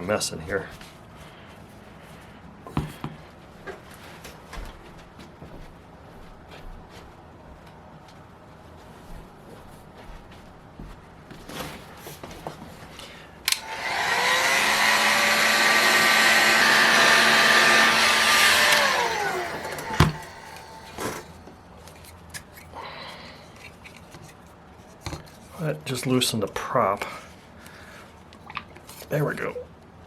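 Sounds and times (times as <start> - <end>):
heat gun fan blowing: 13.0 - 21.7
heat gun switch click: 13.5 - 14.0.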